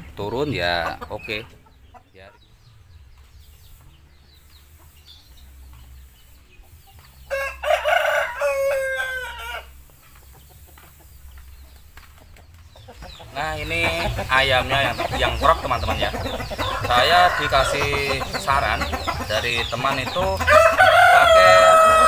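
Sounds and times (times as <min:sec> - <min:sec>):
chickens clucking: 0:00.0 - 0:22.0
rooster crowing: 0:07.3 - 0:09.8, 0:16.6 - 0:17.8, 0:20.5 - 0:22.0.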